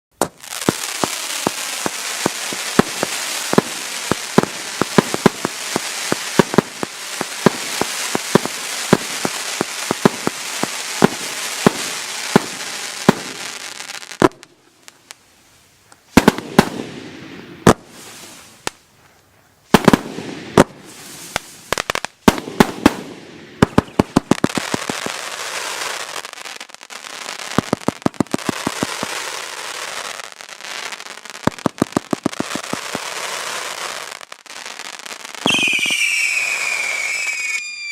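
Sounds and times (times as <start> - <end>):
fireworks bangs: 0.1 - 15.2, 16.1 - 18.8, 19.7 - 37.9
fireworks crackling hiss: 0.2 - 37.9.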